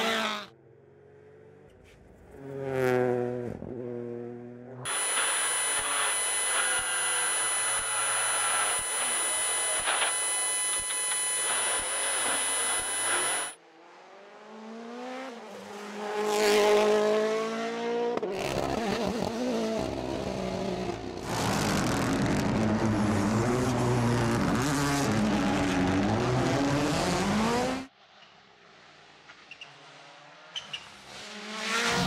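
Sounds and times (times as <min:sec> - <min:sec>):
rally cars passing at full throttle: 0:00.0 - 0:04.8, 0:13.6 - 0:32.0.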